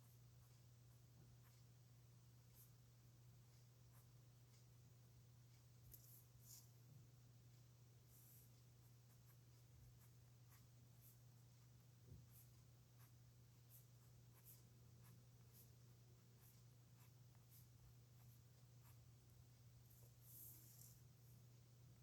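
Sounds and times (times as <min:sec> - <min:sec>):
low electrical hum: 0:00.0 - 0:22.0
pen scratching on paper: 0:12.1 - 0:19.2.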